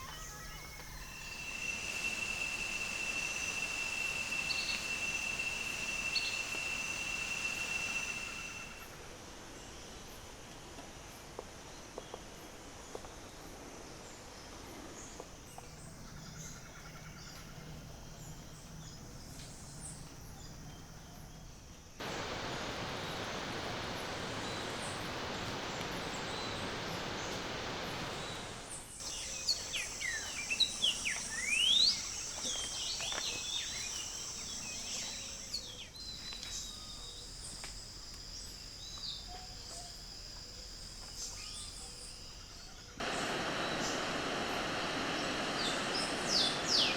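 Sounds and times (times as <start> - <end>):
birds whistling: 0.0 - 8.8, 24.2 - 36.9, 43.0 - 46.9
high insect drone: 0.0 - 9.0, 22.0 - 46.9
even rushing noise: 22.0 - 29.2, 43.0 - 46.9.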